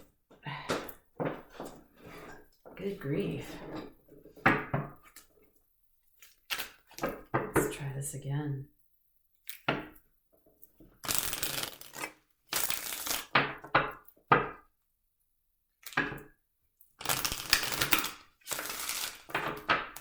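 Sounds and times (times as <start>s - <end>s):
cards being shuffled: 11.0s - 13.3s.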